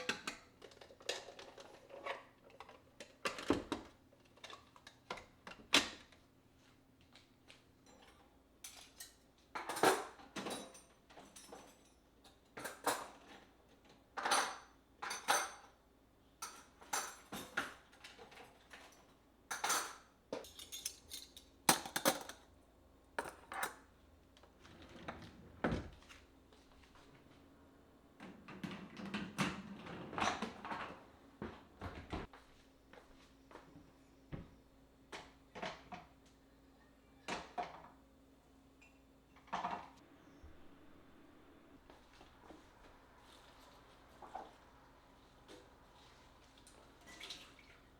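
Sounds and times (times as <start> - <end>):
dishes and cutlery clinking: 7.9 - 13.4, 14.2 - 15.8, 16.4 - 22.5.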